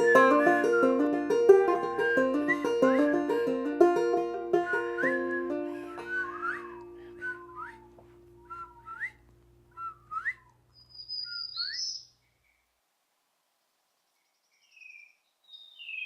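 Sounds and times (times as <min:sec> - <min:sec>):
held music note: 0:00.0 - 0:08.9.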